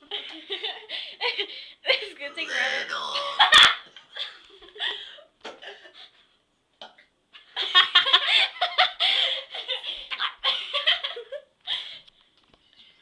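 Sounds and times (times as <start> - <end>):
girls giggling and laughing: 0.0 - 2.2, 3.2 - 6.3, 7.4 - 11.8.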